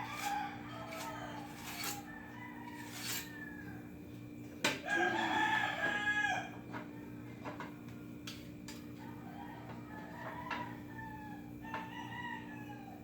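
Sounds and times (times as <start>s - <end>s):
rooster crowing: 0.0s - 4.0s, 4.8s - 7.1s, 9.0s - 13.0s.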